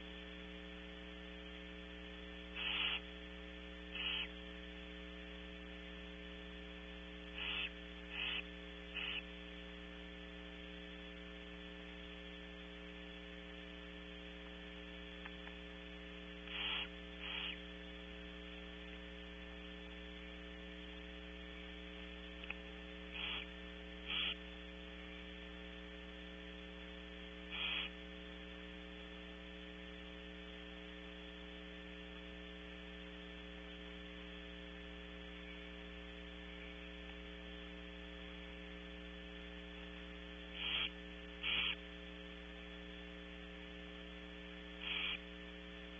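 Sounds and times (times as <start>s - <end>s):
electrical mains hum: 0.0s - 45.9s
owls hissing: 2.6s - 3.0s, 4.0s - 4.3s, 7.4s - 9.2s, 16.5s - 17.6s, 23.1s - 23.5s, 24.1s - 24.4s, 27.5s - 27.9s, 40.6s - 41.8s, 44.8s - 45.2s.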